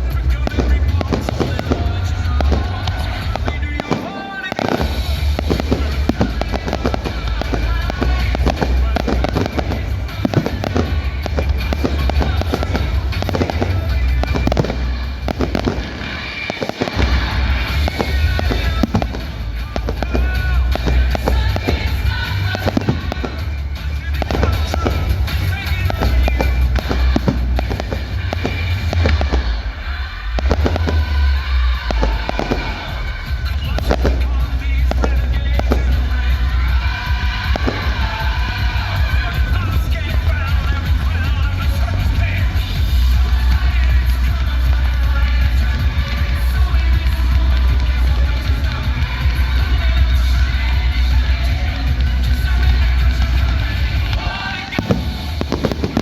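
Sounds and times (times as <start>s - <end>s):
low rumble: 0.0s - 4.0s, 4.6s - 56.0s
fireworks bangs and crackles: 0.0s - 56.0s
music playing: 0.0s - 56.0s.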